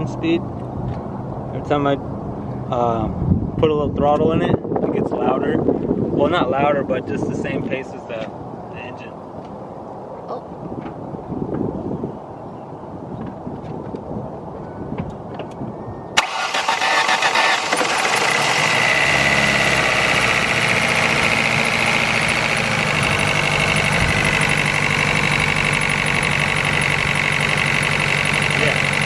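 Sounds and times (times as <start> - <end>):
car engine cranking and starting: 16.2 - 29.0
car engine idling: 16.2 - 29.0
engine clicking chirp: 16.2 - 29.0.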